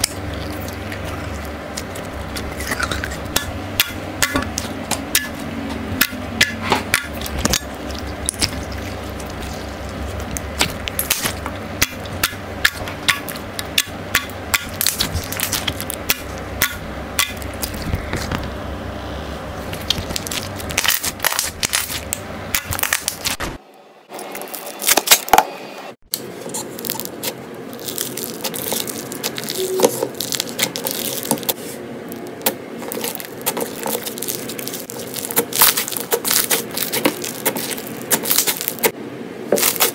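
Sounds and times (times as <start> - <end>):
slime crackling and popping: 6.0 - 18.5, 19.7 - 23.4, 26.4 - 38.9.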